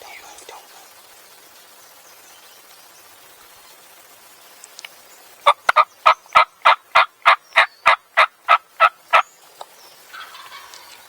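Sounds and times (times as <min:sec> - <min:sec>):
turkey yelps: 0:10.1 - 0:11.0.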